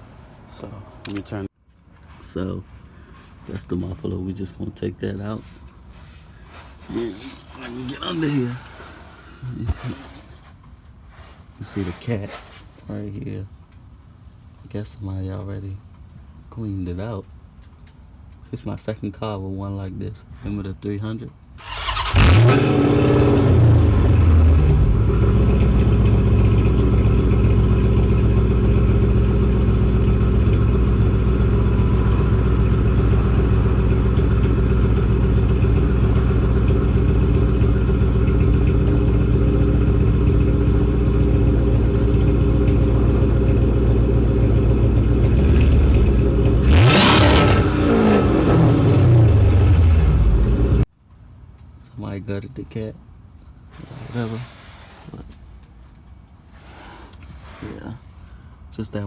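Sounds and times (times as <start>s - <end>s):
engine revving: 21.6s - 50.8s
car engine idling: 21.7s - 50.8s.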